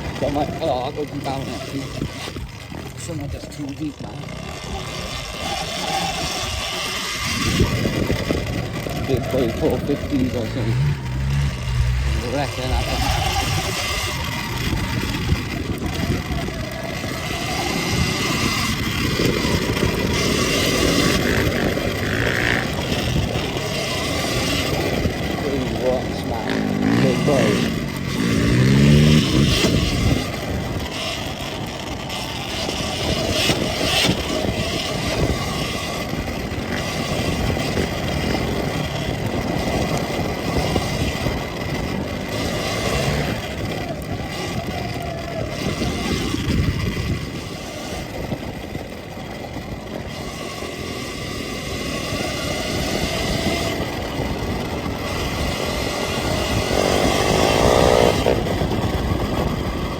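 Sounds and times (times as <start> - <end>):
electric dirt bike riding on rocks: 0.0 - 59.9.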